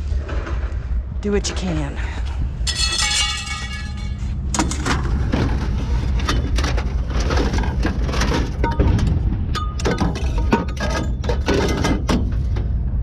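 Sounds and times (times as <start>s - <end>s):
low engine rumble: 0.0s - 13.0s
metal pieces clanking onto pile: 2.7s - 5.6s, 6.2s - 12.4s.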